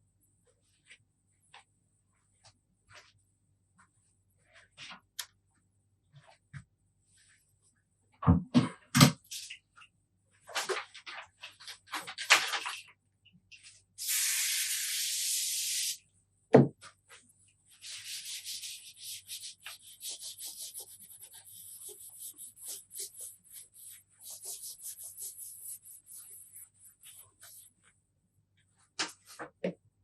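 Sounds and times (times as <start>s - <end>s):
steady hiss: 14.0s - 16.0s
rubbing and scratching strokes: 17.1s - 28.0s.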